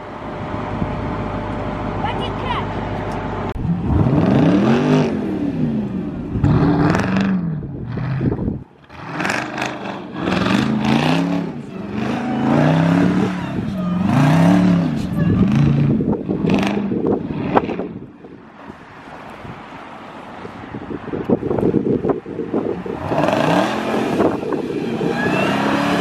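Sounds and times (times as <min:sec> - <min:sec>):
car engine revving: 0:03.5 - 0:18.1, 0:21.6 - 0:26.0.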